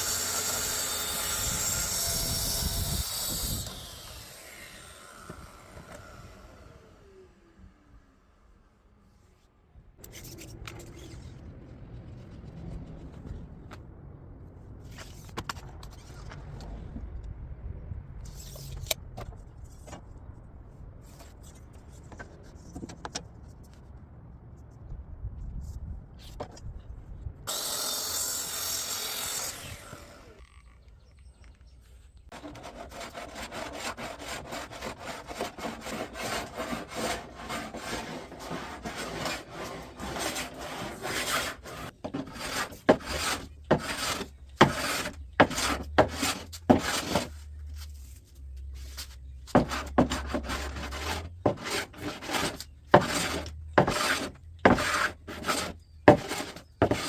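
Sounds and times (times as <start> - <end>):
hand plane rasping on wood: 32.4 - 47.3, 49.5 - 57.0.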